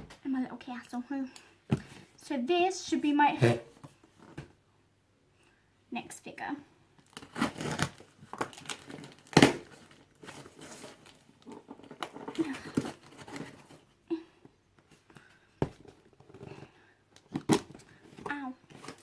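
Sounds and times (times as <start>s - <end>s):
cardboard tearing and crinkling: 7.0s - 13.8s, 18.7s - 19.0s.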